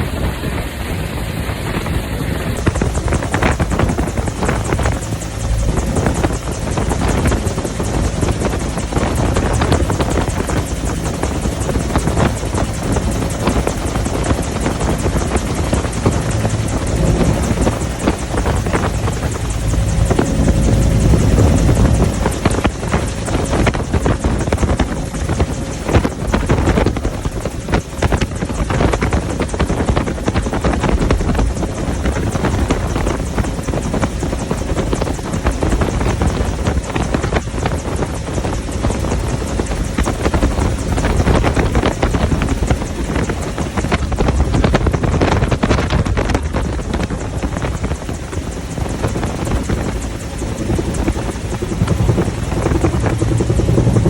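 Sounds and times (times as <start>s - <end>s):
helicopter rotor and engine noise: 0.0s - 54.0s.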